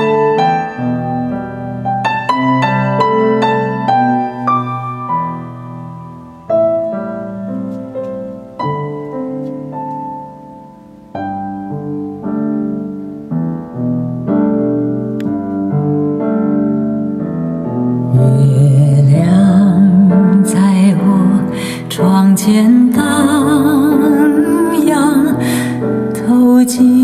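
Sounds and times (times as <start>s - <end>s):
slow piano chords: 0.0s - 27.0s.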